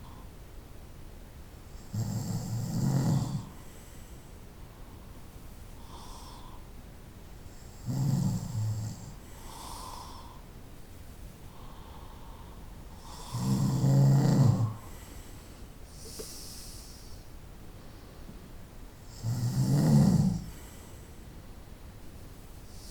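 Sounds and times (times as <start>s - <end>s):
soft breathing: 3.4s - 6.8s, 9.1s - 10.6s, 11.4s - 13.6s, 14.6s - 18.5s, 20.4s - 21.6s, 22.6s - 22.9s
person snoring: 13.0s - 14.8s, 19.1s - 20.7s.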